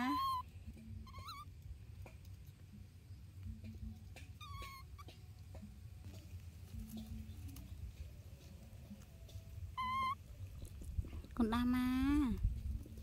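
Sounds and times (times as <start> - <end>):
baby monkey contact call: 0.0 - 2.2, 3.6 - 6.2, 9.0 - 10.9.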